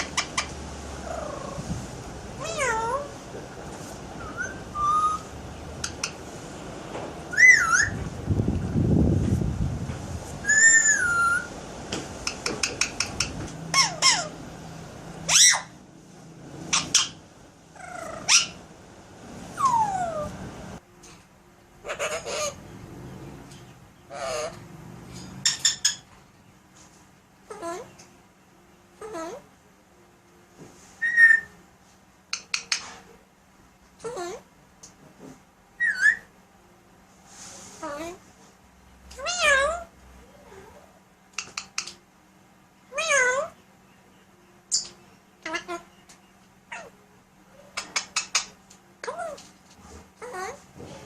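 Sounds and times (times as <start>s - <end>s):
parrot meow-like calls: 2.4s - 3.1s, 4.2s - 5.2s, 7.3s - 8.0s, 10.4s - 11.5s, 19.6s - 20.3s, 35.8s - 36.3s, 39.2s - 40.9s, 42.9s - 43.6s
parrot squawking: 2.4s - 3.1s, 4.2s - 6.2s, 7.3s - 8.0s, 10.4s - 11.5s, 12.3s - 14.4s, 15.2s - 15.8s, 16.7s - 17.2s, 17.8s - 18.6s, 19.6s - 20.3s, 21.8s - 22.6s, 24.1s - 24.6s, 25.4s - 26.1s, 31.0s - 31.5s, 35.8s - 36.3s, 39.2s - 40.6s, 42.9s - 43.6s, 44.7s - 45.9s, 46.7s - 47.0s, 50.2s - 50.6s.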